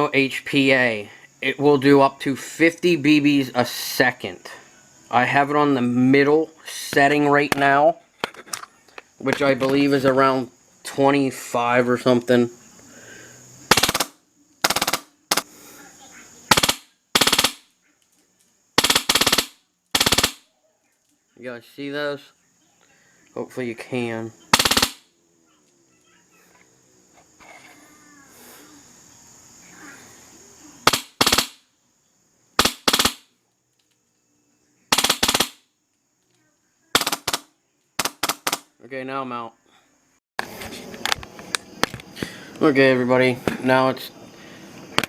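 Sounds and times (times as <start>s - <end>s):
airsoft rifle firing bursts: 13.7s - 15.5s, 16.5s - 17.6s, 18.8s - 20.4s, 24.5s - 25.0s, 30.8s - 31.6s, 32.6s - 33.3s, 34.9s - 35.6s, 37.0s - 38.6s.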